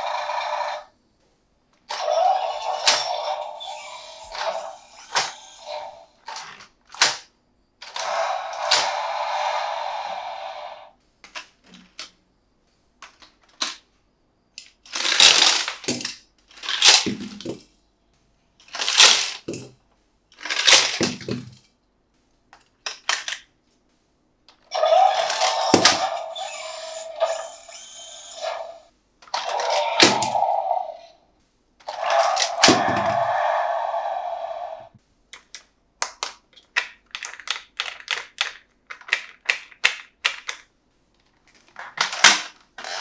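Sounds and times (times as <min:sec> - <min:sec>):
clicks and taps on packaging: 0:35.4 - 0:40.7.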